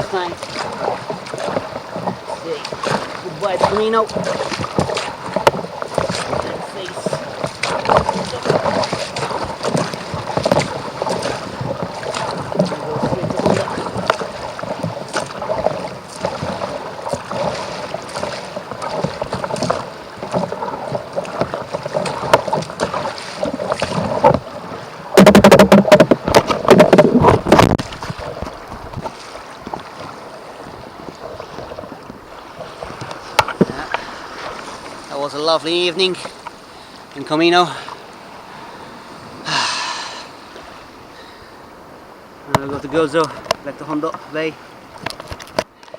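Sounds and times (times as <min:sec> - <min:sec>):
wind on microphone: 0:00.0 - 0:35.1
water splashing around kayak: 0:00.0 - 0:45.9.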